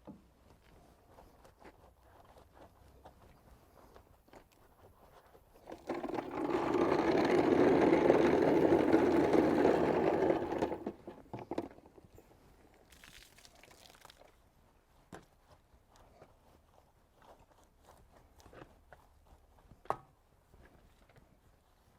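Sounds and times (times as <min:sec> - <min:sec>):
small motor tool whirring: 0:05.7 - 0:11.1.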